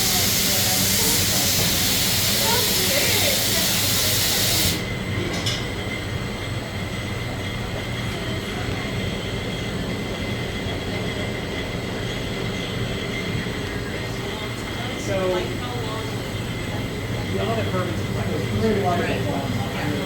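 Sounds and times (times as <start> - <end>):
loud hiss: 0.0 - 4.9
bottling machinery drone: 0.0 - 5.2.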